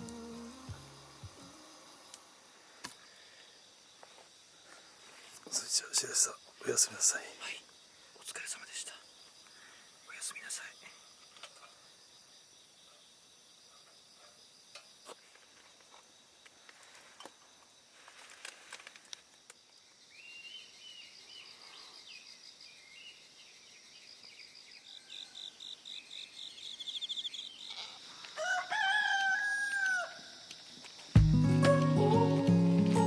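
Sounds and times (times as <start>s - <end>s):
small birds chirping: 5.4s - 11.8s
rooster crowing: 28.4s - 30.4s.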